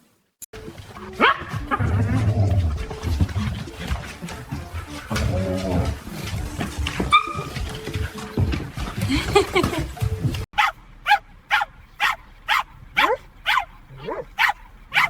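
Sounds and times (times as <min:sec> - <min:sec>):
dog barking: 0:01.0 - 0:02.3, 0:07.0 - 0:07.8, 0:10.6 - 0:15.0.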